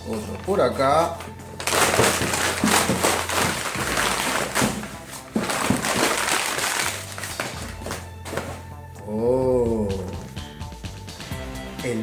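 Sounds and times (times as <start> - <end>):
paper crinkling and rustling: 0.0 - 8.7
package being cut open: 1.6 - 8.6.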